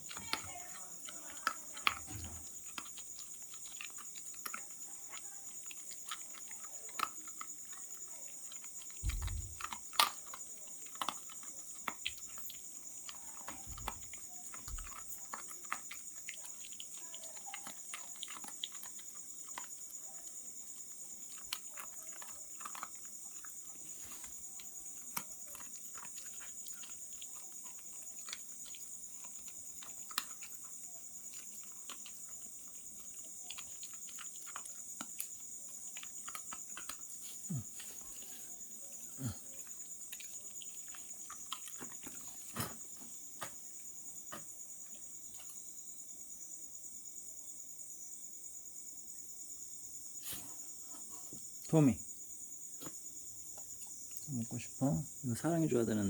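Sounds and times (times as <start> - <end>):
dog crunching dry kibble: 0.0 - 38.6, 39.5 - 43.9.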